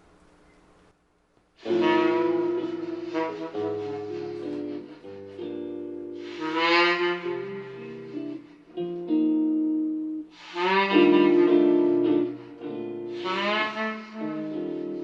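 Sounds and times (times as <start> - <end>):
saxophone phrases over loudspeakers: 1.6 - 4.8, 6.2 - 8.5, 10.4 - 15.0.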